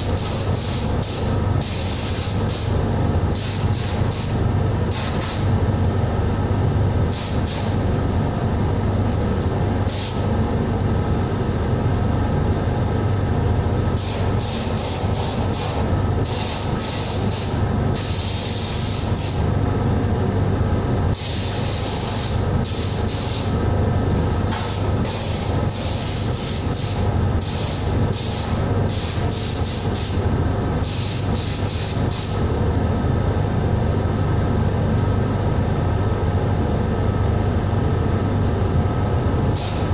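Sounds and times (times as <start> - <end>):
compressed-air tool hissing: 0.0 - 2.8, 3.4 - 5.6, 7.1 - 7.8, 9.9 - 10.3, 13.9 - 19.5, 21.2 - 23.6, 24.4 - 30.2, 30.8 - 32.4, 39.5 - 39.9
low machine hum: 0.0 - 39.9.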